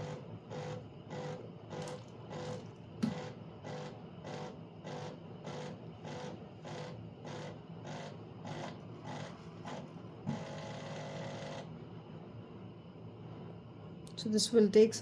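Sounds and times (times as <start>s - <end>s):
espresso machine pump pulsing: 0.0s - 11.7s.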